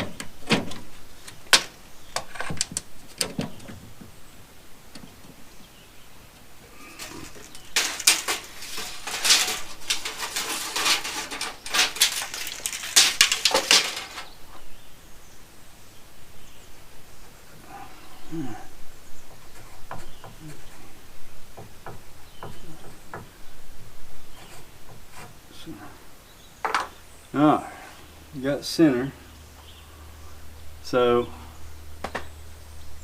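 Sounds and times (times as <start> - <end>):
dense clattering of tools: 7.0 - 14.4.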